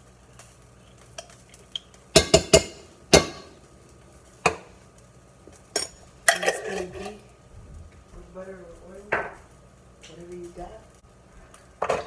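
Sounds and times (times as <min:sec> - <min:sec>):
sharp knocks of pan: 0:02.1 - 0:03.6, 0:04.4 - 0:04.7
cookware clattering: 0:05.7 - 0:07.2.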